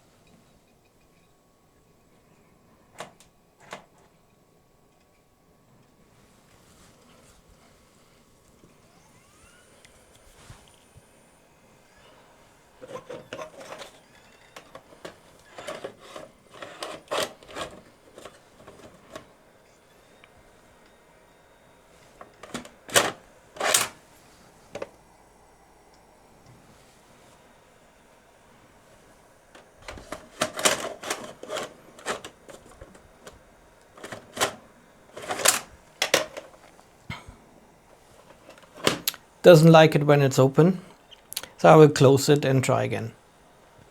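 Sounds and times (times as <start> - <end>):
tape mechanism clicking and clunking: 12.8 - 19.3, 22.0 - 24.0, 29.5 - 36.8, 37.9 - 39.2.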